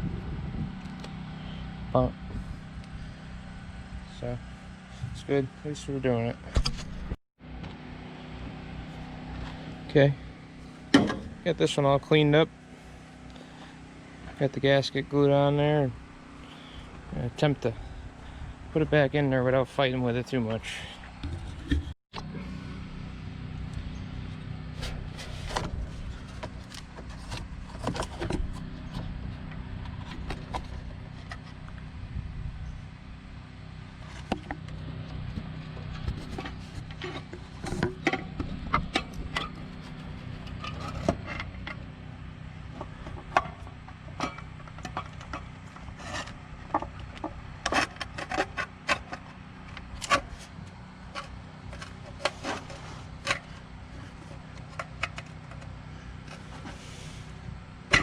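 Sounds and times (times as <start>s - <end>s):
steady low hum: 0.0s - 58.0s
metal parts clinking and scraping: 36.1s - 41.8s.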